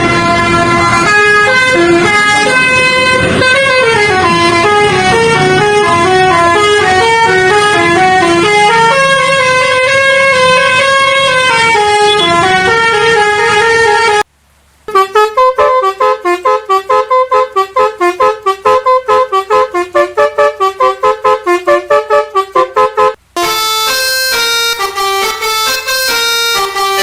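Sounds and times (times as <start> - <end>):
multi-tone musical bus horn: 0.0 - 14.3, 14.9 - 27.0.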